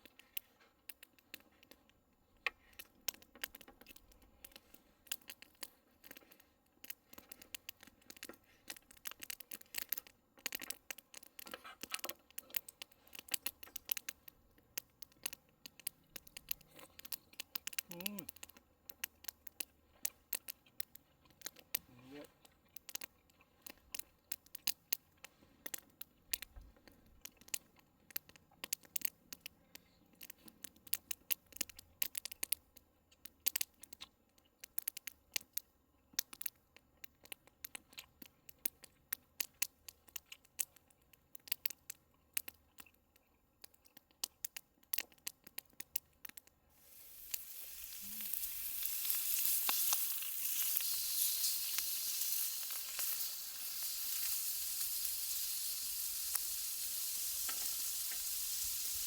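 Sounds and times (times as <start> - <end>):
sharp crackles: 2.7 - 43.0, 43.6 - 59.0
steak sizzling on grill plate: 46.7 - 59.0.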